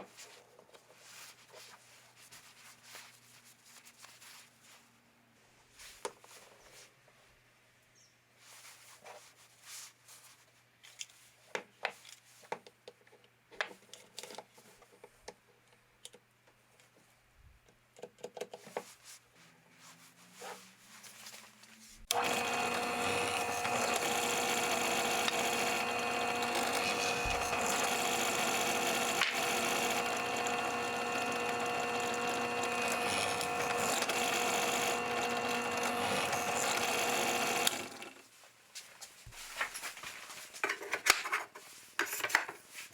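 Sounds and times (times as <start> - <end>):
wood and tools knocking: 22.1 - 38.1
power tool motor whining: 22.1 - 38.2.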